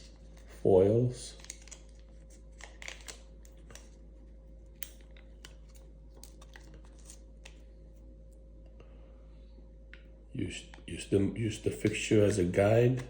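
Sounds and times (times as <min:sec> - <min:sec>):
foil lid clicking and crinkling: 0:01.4 - 0:03.9.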